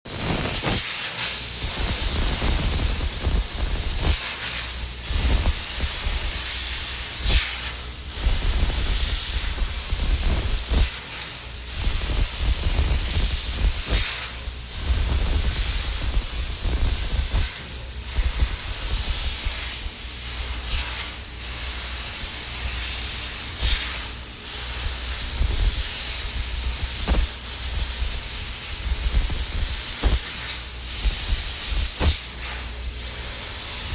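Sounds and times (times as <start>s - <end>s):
laser cutter hissing: 0.1s - 33.9s.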